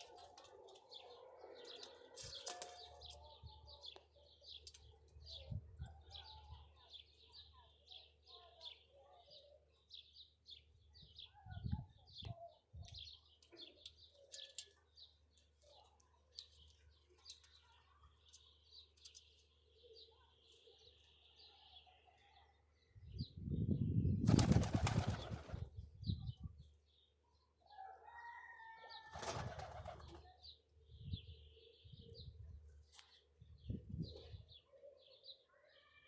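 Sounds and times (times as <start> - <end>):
birds flapping wings: 24.3 - 25.6.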